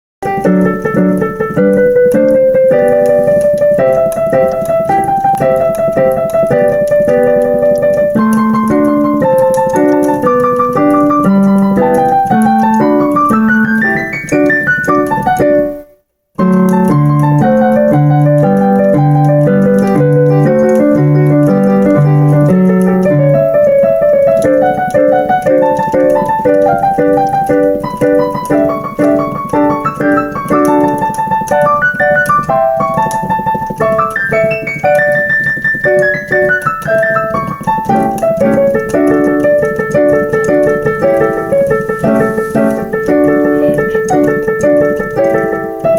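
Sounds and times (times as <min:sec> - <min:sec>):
digital piano playing: 0:00.2 - 0:45.9.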